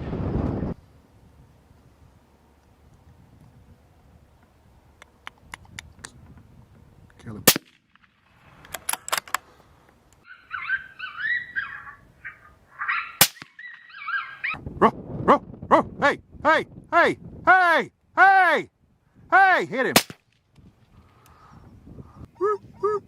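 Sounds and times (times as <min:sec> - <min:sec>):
gunshots: 0:07.5 - 0:08.2, 0:13.2 - 0:13.6, 0:19.9 - 0:20.2
coyote yelping and whining: 0:10.2 - 0:14.6, 0:22.2 - 0:23.0.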